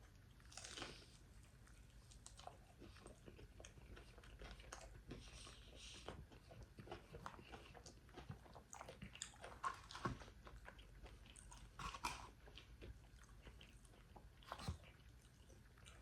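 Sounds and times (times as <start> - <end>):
chewing crispy fried chicken: 0.0 - 16.0.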